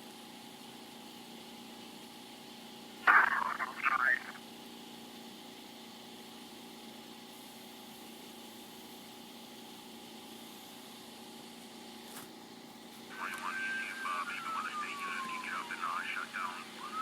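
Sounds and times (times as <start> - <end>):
radio scanner hiss and hum: 3.0 - 4.4, 13.0 - 17.0.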